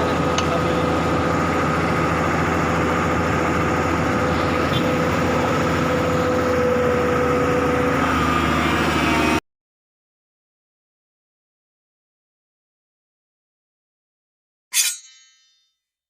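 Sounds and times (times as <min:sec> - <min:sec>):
steady whine: 0:00.0 - 0:07.8
heavy diesel engine running: 0:00.0 - 0:09.4.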